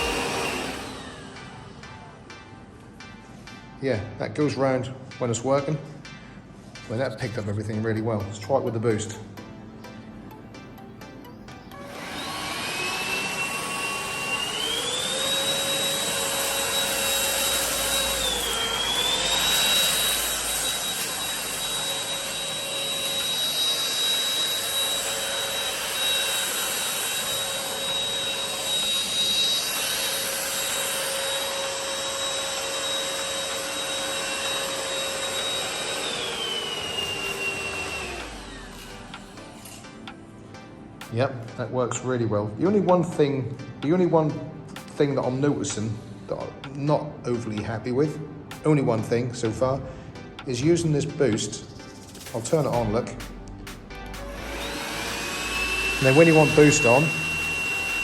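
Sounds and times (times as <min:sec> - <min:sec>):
vacuum cleaner motor whine: 0:00.0 - 0:02.1, 0:11.6 - 0:40.1, 0:54.1 - 0:58.0.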